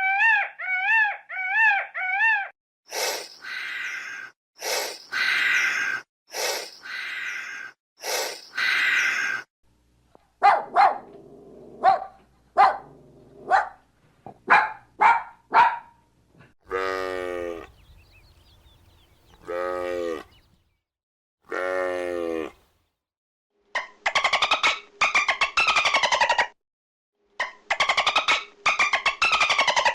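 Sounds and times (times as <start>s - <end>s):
long drawn-out animal calls: 0.0s - 9.5s, 16.7s - 17.8s, 19.4s - 20.5s, 21.5s - 22.6s
animal barking calls: 10.4s - 11.2s, 11.8s - 16.0s.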